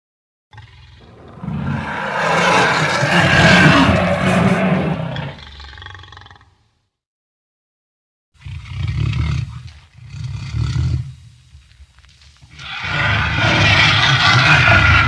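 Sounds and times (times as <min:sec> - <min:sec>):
dinosaur roar: 0:01.0 - 0:05.6, 0:12.6 - 0:15.0.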